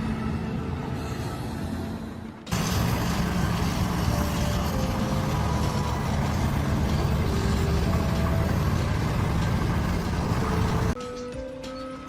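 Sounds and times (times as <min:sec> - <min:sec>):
heavy engine rumble: 0:00.0 - 0:11.0
faint background melody: 0:02.2 - 0:12.0.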